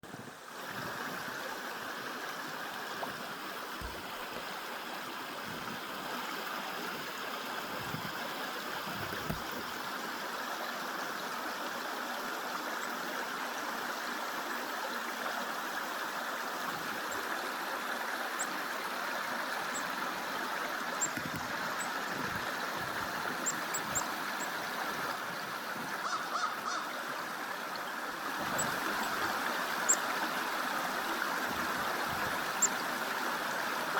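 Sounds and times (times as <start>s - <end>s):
creek water rushing: 0.0s - 33.9s.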